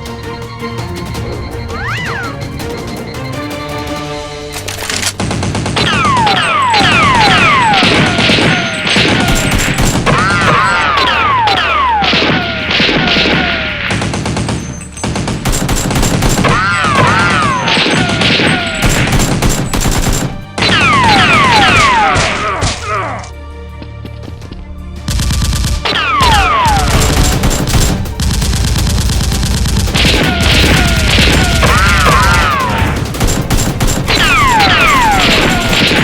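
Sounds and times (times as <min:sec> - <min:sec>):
background music: 0:00.0 - 0:36.0
rapid blaster gunfire: 0:05.2 - 0:22.4, 0:25.1 - 0:36.0.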